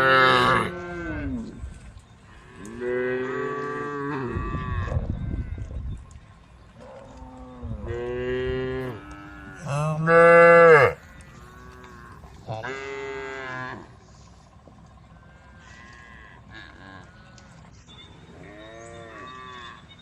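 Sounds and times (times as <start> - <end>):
cows mooing: 0.0 - 5.8, 6.7 - 14.3, 15.1 - 17.6, 18.2 - 19.9.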